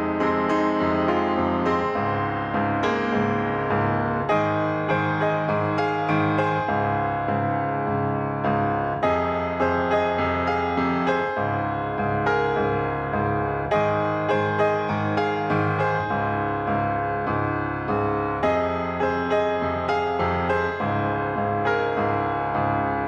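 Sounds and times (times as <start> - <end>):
repeating piano notes: 0.0 - 23.0.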